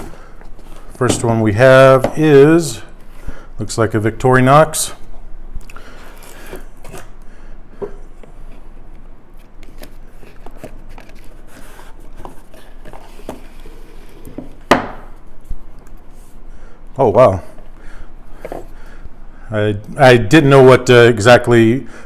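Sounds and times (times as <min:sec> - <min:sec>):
packaging rubbing and rustling: 0:09.3 - 0:14.3.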